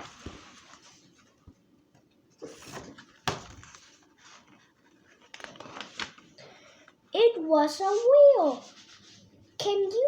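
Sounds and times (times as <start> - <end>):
page rustling: 2.4 - 6.4.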